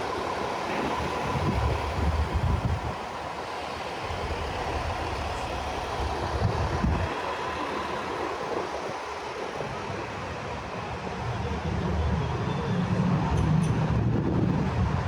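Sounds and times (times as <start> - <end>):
low engine rumble: 0.0 - 15.0
passing vehicles: 0.0 - 15.0.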